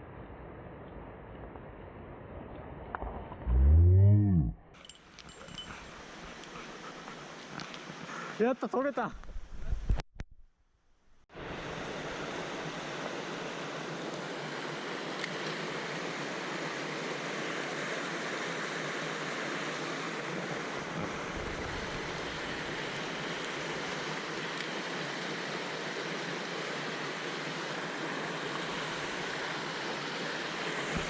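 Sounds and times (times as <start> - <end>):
stream water rushing: 11.4 - 31.0.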